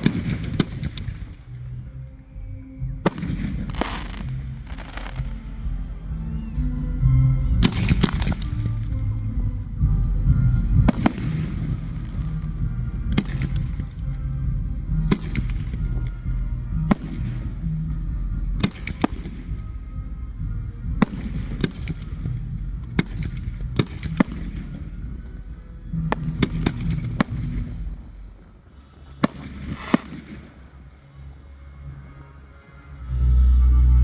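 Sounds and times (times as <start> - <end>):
fireworks bangs: 0.0 - 1.5, 3.1 - 5.9, 7.7 - 8.8, 10.9 - 14.0, 26.0 - 28.1, 29.2 - 30.8
background music: 0.0 - 34.0.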